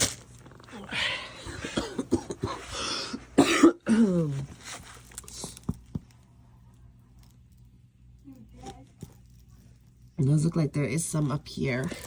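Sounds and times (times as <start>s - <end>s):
plastic packaging crinkling: 0.0s - 0.8s
person coughing: 1.4s - 4.5s.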